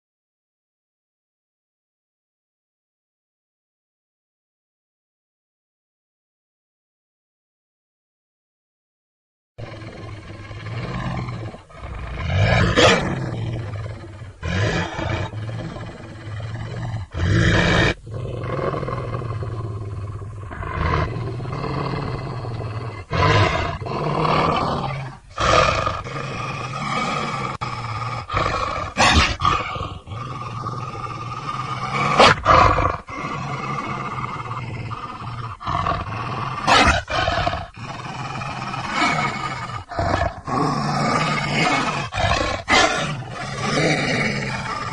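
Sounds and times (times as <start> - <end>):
low rumbling growl and snarls: 9.6 - 44.9.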